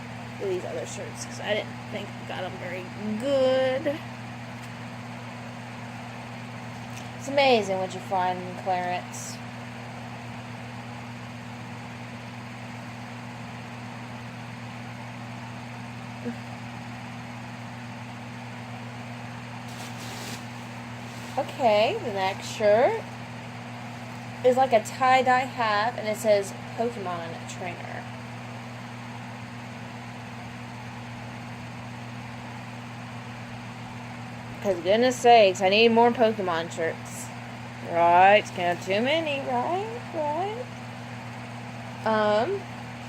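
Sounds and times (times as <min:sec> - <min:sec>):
low electrical hum: 0:00.0 - 0:43.0
constant hiss: 0:19.6 - 0:24.9.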